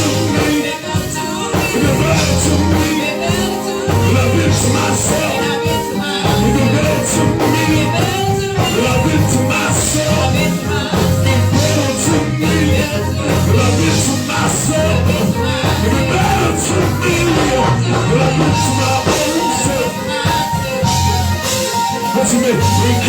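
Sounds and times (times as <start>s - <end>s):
heavy bass: 0.0s - 0.5s, 1.8s - 3.0s, 3.9s - 5.3s, 6.3s - 19.3s, 20.8s - 21.6s, 22.6s - 23.0s
live gospel band playing: 0.0s - 23.0s.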